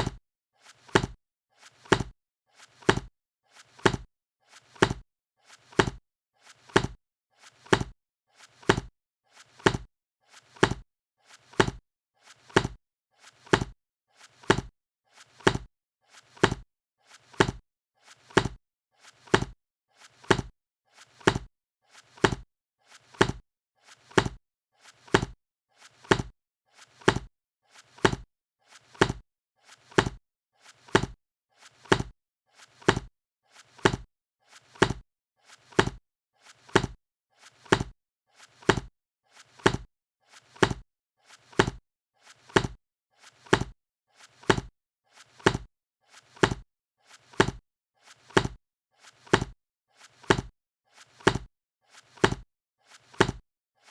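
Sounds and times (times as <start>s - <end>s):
book covers clapping shut: 0.9s - 1.2s, 1.9s - 2.1s, 3.8s - 4.1s, 9.6s - 9.9s, 11.6s - 11.8s, 17.4s - 17.6s, 18.4s - 18.6s, 19.3s - 19.6s, 21.2s - 21.5s, 22.2s - 22.4s, 24.2s - 24.4s, 29.0s - 29.2s, 30.0s - 30.2s, 30.9s - 31.2s, 31.9s - 32.1s, 32.9s - 33.1s, 33.8s - 34.0s, 35.8s - 36.0s, 36.7s - 37.0s, 37.6s - 37.9s, 38.7s - 38.9s, 39.6s - 39.9s, 40.6s - 40.8s, 41.6s - 41.8s, 42.5s - 42.8s, 43.5s - 43.7s, 44.4s - 44.7s, 46.4s - 46.6s, 47.4s - 47.6s, 48.4s - 48.6s, 49.3s - 49.6s, 50.3s - 50.5s, 51.2s - 51.4s, 52.2s - 52.4s, 53.2s - 53.4s.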